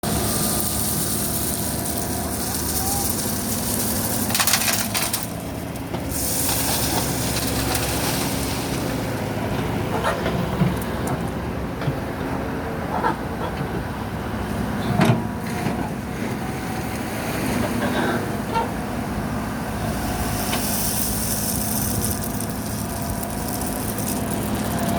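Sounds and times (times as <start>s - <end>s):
heavy vehicle engine running: 0.0s - 24.9s
hiss: 0.1s - 4.3s, 6.0s - 9.2s, 19.8s - 24.9s.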